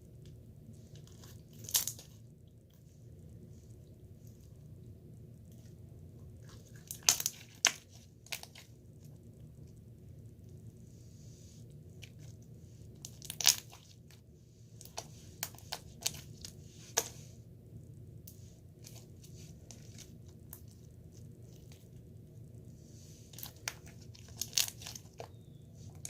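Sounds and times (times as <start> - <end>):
steady low hum: 0.0 - 26.0
slime crackling and popping: 1.1 - 2.2, 6.4 - 8.8, 13.0 - 14.2, 23.3 - 26.0.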